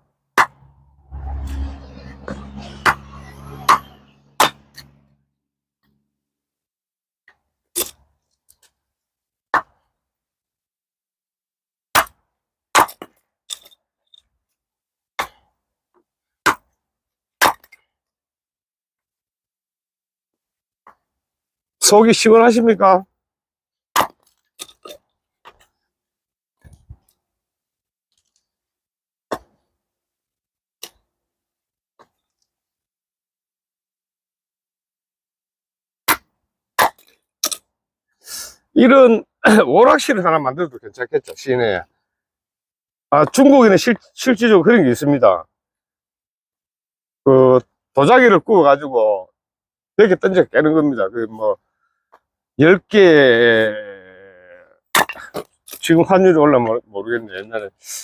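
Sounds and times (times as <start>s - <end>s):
axe splitting wood: 3.7s - 4.9s, 9.5s - 9.8s, 11.9s - 13.2s, 15.2s - 15.4s, 16.5s - 16.7s, 17.4s - 17.8s, 23.9s - 25.6s, 36.1s - 37.6s, 55.0s - 55.8s.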